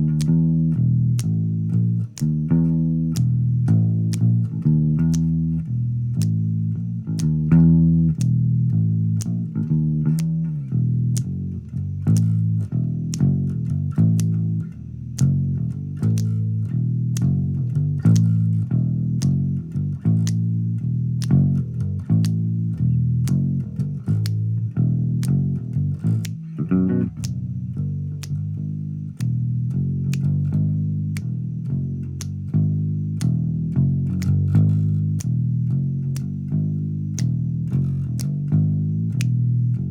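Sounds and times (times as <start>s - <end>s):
bass guitar riff: 0.0s - 39.9s
clicking beat: 0.0s - 39.9s.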